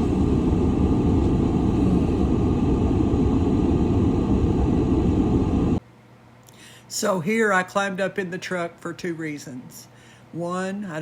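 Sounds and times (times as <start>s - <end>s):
truck engine rumbling inside cab: 0.0s - 5.8s.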